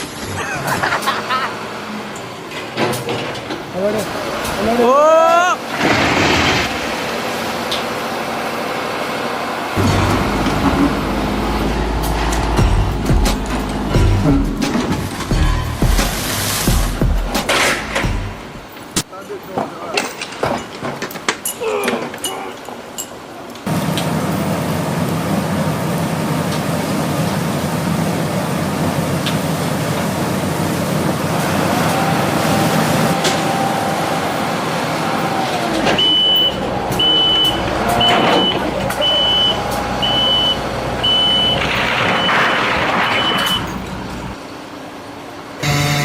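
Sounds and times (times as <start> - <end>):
heavy vehicle engine running: 5.6 - 18.8, 23.7 - 46.0
reversing alarm beeps: 36.0 - 42.5, 43.1 - 43.8.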